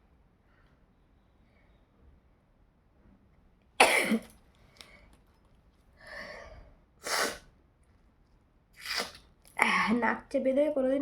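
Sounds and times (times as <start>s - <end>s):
person sneezing: 3.8s - 4.3s, 7.0s - 7.5s
voiced intake before sneeze: 7.0s - 7.6s, 8.8s - 9.3s.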